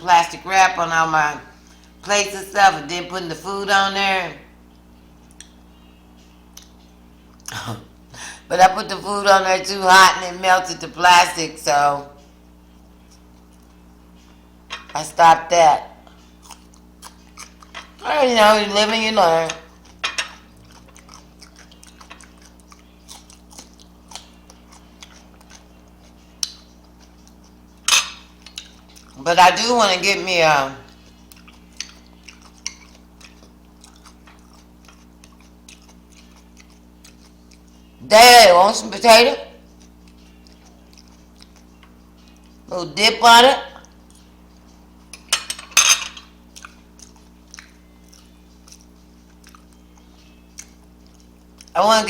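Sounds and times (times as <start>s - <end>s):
steady low hum: 0.0s - 52.0s
person chewing food: 4.7s - 5.6s, 6.2s - 8.4s, 12.2s - 14.5s, 16.0s - 29.3s, 30.8s - 38.0s, 39.6s - 42.7s, 43.7s - 45.3s, 46.2s - 51.8s.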